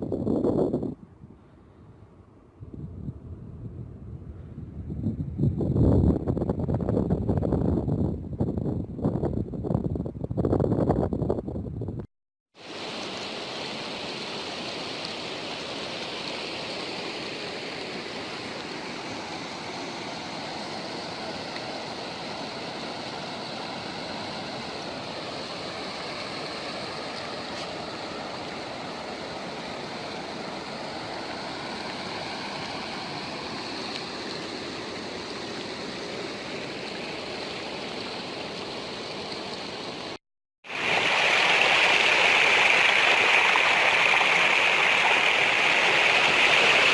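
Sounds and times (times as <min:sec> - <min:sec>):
running water rushing: 0:12.6 - 0:46.9.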